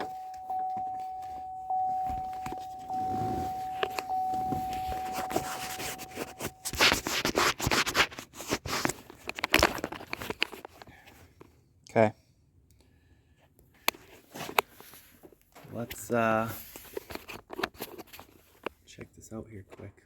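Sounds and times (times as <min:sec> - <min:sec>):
vehicle warning chime: 0:00.0 - 0:06.9
rustling and clicking of handling: 0:00.0 - 0:11.5, 0:13.8 - 0:19.9.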